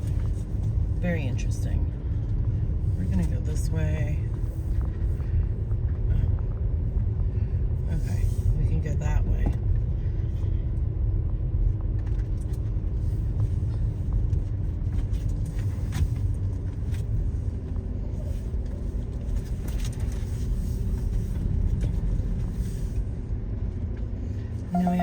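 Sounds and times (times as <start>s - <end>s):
car rumbling slowly: 0.0s - 25.0s
faint hum dropping in pitch: 24.7s - 25.0s.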